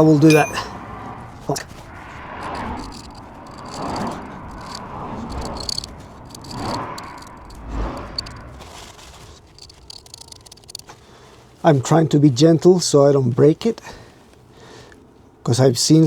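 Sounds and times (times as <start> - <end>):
metal scraping: 0.0 - 0.9, 1.5 - 10.9
faint metal clinks: 0.2 - 0.8.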